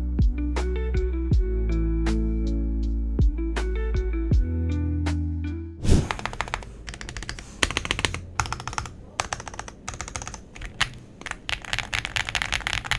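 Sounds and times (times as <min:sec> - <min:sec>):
fast mechanical keyboard typing: 0:06.0 - 0:12.9.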